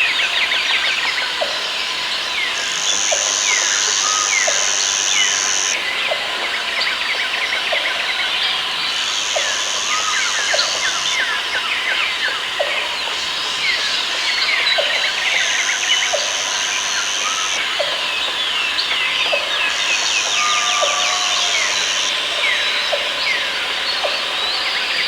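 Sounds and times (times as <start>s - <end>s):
high insect buzz: 1.4s - 5.8s, 8.5s - 12.3s, 13.2s - 23.3s
birds chirping and whistling: 2.2s - 5.9s.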